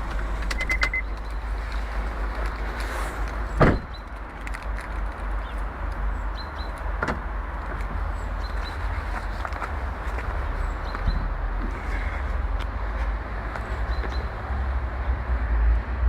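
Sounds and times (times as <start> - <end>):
car engine humming: 0.0 - 15.5
sharp thump: 3.6 - 3.9.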